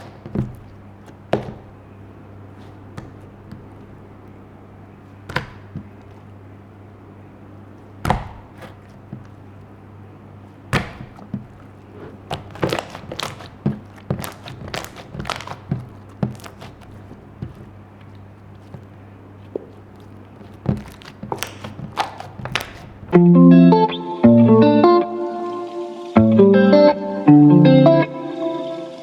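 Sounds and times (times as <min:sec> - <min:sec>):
slime clicking and popping: 0:10.8 - 0:11.6, 0:12.3 - 0:17.6.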